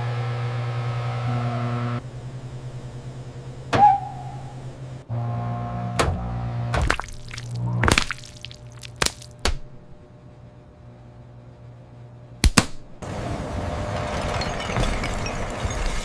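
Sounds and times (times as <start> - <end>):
microwave oven humming: 0.0 - 6.8, 9.4 - 13.7.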